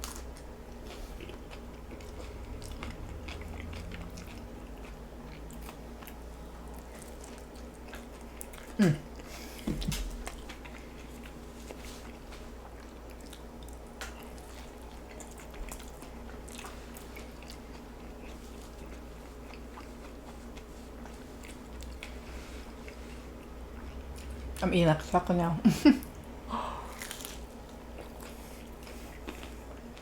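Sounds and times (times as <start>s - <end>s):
crunchy chewing and biting: 0.0s - 9.3s, 26.8s - 30.0s.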